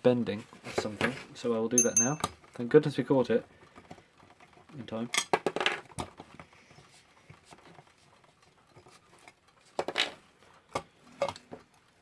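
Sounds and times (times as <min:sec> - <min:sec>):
clicks and taps of clock parts: 0:01.8 - 0:02.3.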